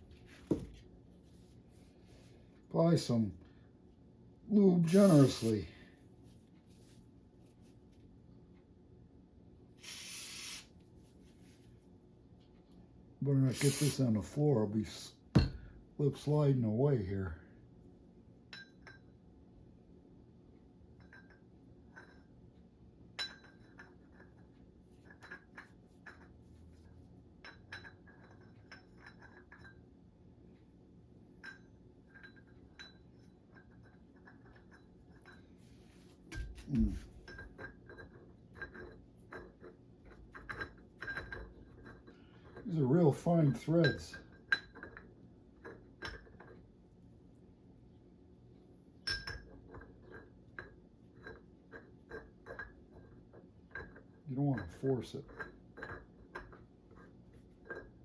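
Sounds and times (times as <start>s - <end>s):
aerosol spray hiss: 4.9s - 5.5s, 9.8s - 10.7s, 13.5s - 14.0s.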